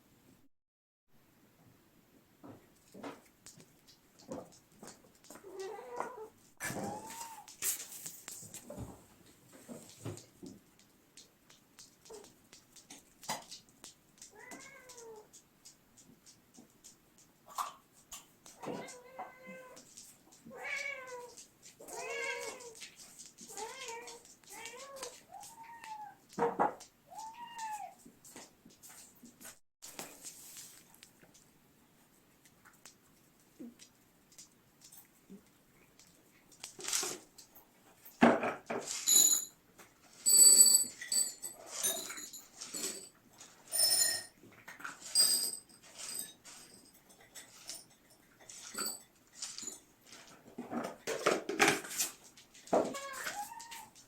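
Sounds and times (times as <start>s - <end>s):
cat meowing: 5.4s - 7.6s, 14.3s - 15.4s, 18.6s - 19.8s, 20.5s - 22.8s, 23.5s - 26.2s, 27.1s - 28.0s, 52.8s - 54.0s.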